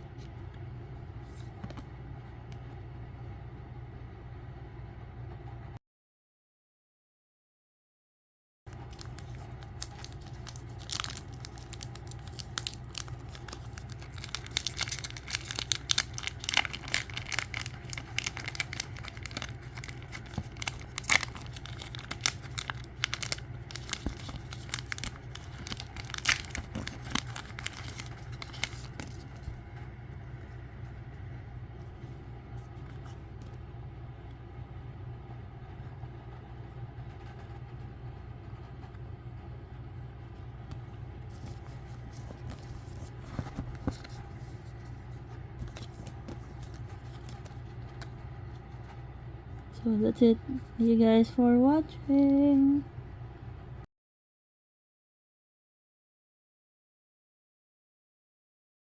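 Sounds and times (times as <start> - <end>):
steady low hum: 0.0 - 5.8, 8.7 - 53.9
wrapper tearing and crinkling: 8.8 - 29.5.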